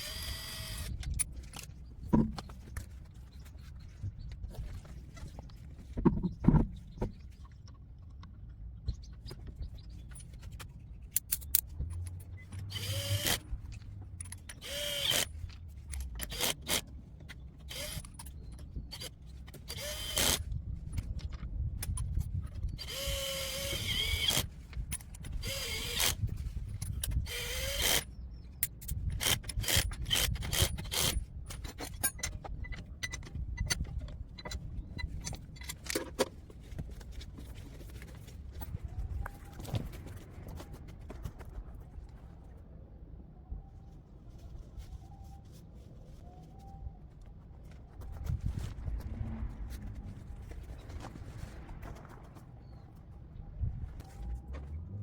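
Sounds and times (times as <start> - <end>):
power tool whirring: 0.0 - 1.0, 12.7 - 13.4, 14.5 - 15.4, 17.7 - 18.1, 19.7 - 20.4, 22.8 - 24.4, 25.4 - 26.2, 27.3 - 28.0.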